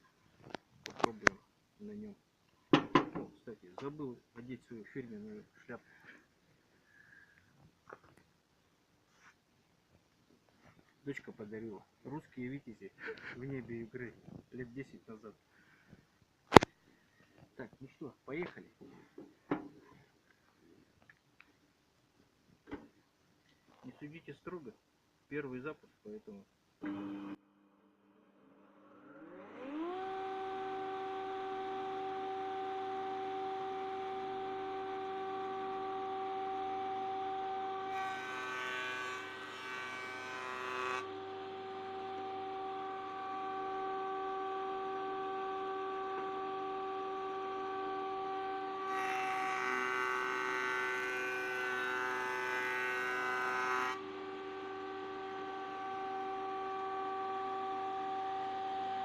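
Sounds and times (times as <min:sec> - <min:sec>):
woodworking machine whining: 0:28.8 - 0:59.0
cutter cutting board: 0:37.9 - 0:41.2, 0:48.9 - 0:54.0.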